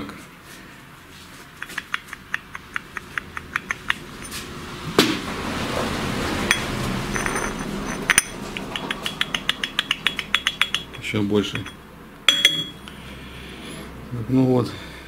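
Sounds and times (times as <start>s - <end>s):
metallic tool clicks: 1.6s - 4.3s, 7.2s - 12.8s
metallic knock: 1.6s - 4.4s, 6.5s - 12.8s.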